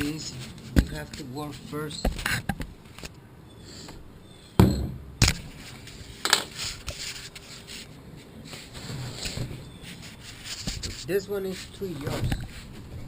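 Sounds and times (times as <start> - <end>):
sharp knocks: 4.6 - 5.4.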